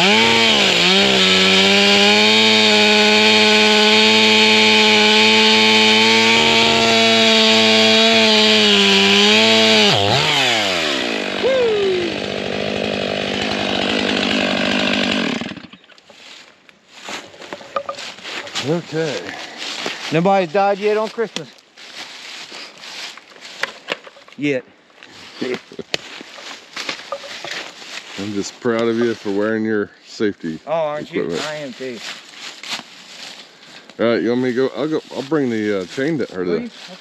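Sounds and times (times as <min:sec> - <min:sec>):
chainsaw at full throttle: 0:00.0 - 0:15.7.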